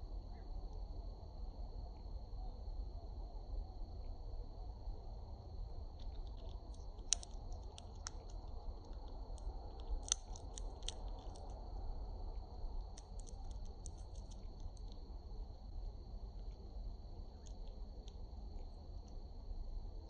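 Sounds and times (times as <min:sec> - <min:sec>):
bird cracking seed shells: 0:06.0 - 0:11.6, 0:12.8 - 0:15.0, 0:17.4 - 0:18.2.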